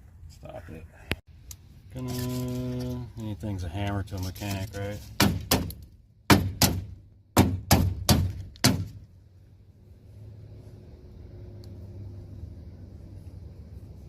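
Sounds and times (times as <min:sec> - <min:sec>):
sharp metallic knocks of hand tool: 0:05.2 - 0:09.0.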